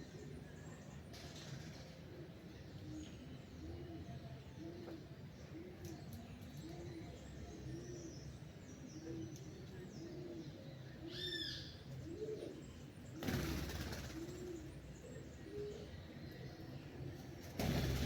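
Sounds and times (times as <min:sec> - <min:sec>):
dove cooing: 0:10.0 - 0:16.0
wing flaps: 0:17.5 - 0:18.0.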